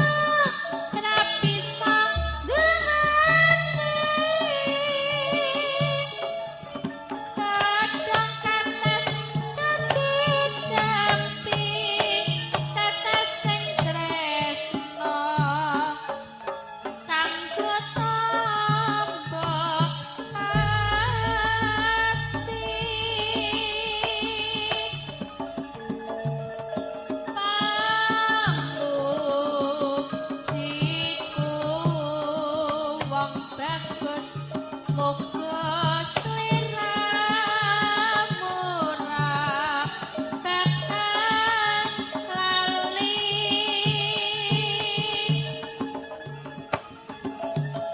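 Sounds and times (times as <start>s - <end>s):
person singing with vibrato: 0.0s - 6.7s, 7.4s - 15.9s, 17.1s - 25.7s
hand drum strokes: 0.0s - 47.9s.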